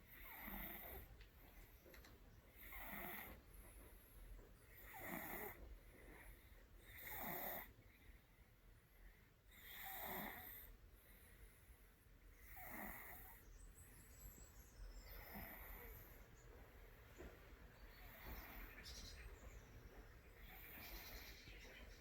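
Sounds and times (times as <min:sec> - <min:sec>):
cat snoring faintly: 0:00.0 - 0:01.2, 0:02.5 - 0:08.2, 0:09.0 - 0:13.5, 0:15.0 - 0:17.0, 0:17.8 - 0:19.3, 0:20.3 - 0:21.8.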